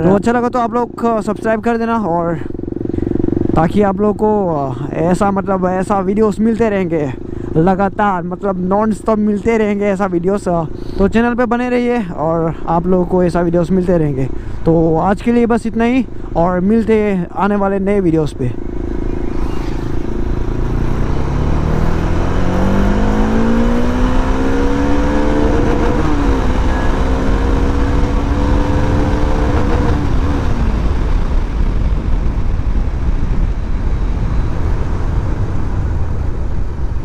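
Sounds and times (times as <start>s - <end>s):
motorcycle engine accelerating: 0.0s - 12.2s, 12.8s - 37.0s
heavy low rumble: 0.0s - 37.0s.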